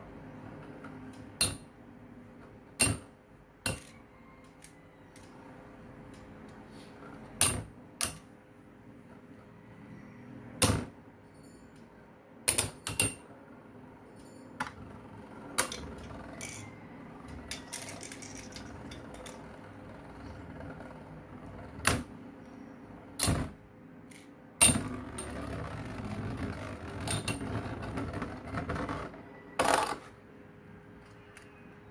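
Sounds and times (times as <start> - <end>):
metal spinning tops clacking: 15.6 - 16.7, 17.4 - 19.6.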